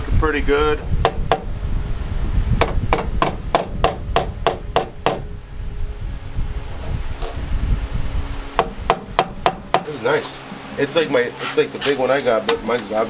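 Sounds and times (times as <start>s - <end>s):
hammer striking sheet metal: 2.6s - 5.3s, 8.6s - 10.0s.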